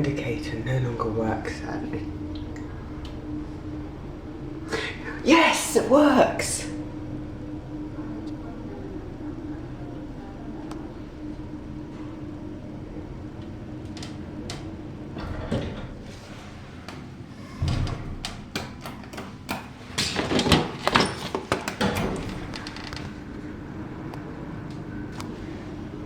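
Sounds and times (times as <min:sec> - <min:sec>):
low steady hum: 0:00.0 - 0:19.5, 0:21.8 - 0:26.0
lift gate clanking and rattling: 0:14.0 - 0:23.2.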